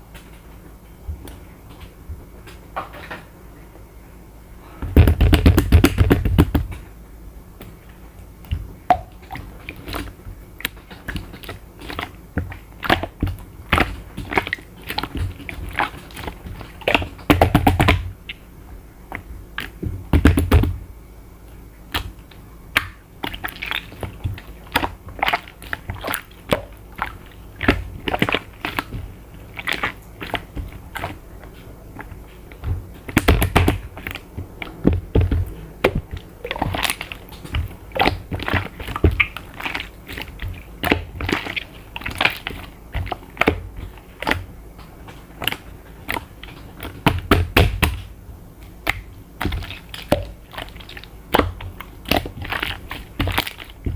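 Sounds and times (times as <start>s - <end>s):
slime squished by hand: 8.4s - 18.4s, 21.8s - 53.9s.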